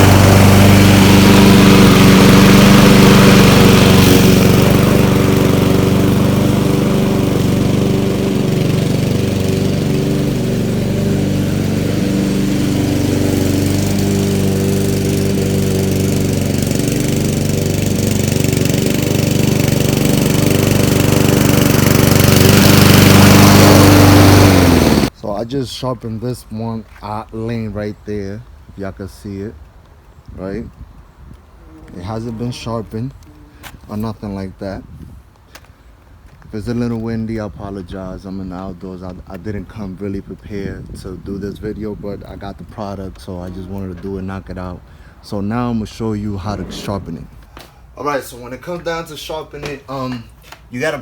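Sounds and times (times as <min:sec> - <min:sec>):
lawn mower engine running: 0:00.0 - 0:25.2, 0:31.4 - 0:34.3.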